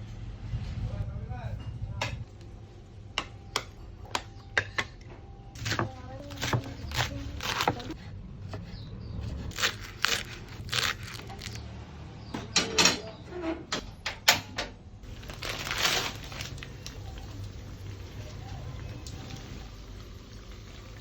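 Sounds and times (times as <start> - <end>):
kitchen knocks and clinks: 12.3 - 14.8.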